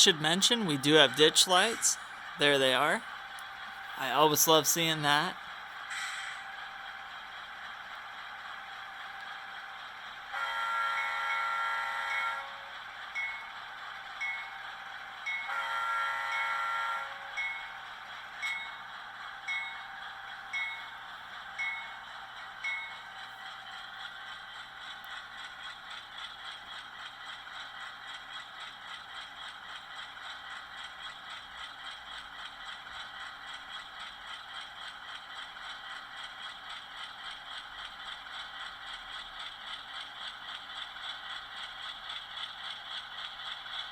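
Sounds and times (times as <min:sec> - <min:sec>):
locomotive bell ringing: 0:00.0 - 0:02.9, 0:10.4 - 0:23.4
diesel engine sound pulsing: 0:00.0 - 0:43.9
model train horn blasts: 0:10.3 - 0:12.7, 0:15.5 - 0:17.4.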